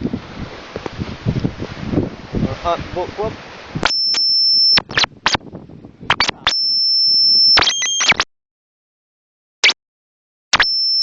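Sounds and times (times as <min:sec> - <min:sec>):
high electronic beep tone: 0:03.8 - 0:05.4, 0:06.1 - 0:08.3, 0:10.5 - 0:11.0
sharp clicks: 0:06.1 - 0:06.5.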